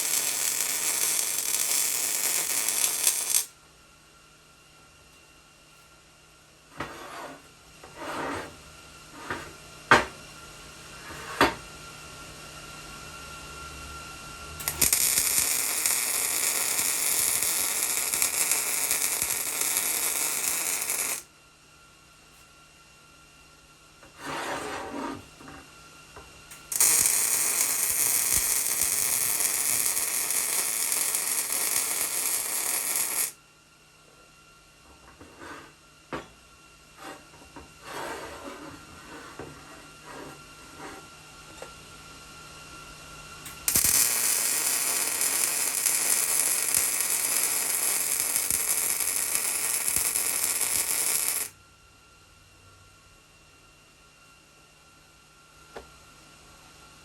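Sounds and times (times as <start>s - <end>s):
welding arc crackling hiss: 0.0s - 3.5s, 14.6s - 21.3s, 26.5s - 33.4s, 43.5s - 51.5s
faint steady hum: 0.0s - 57.0s
workpieces scraping: 6.8s - 8.6s, 9.2s - 9.6s, 24.0s - 25.6s, 37.0s - 41.1s.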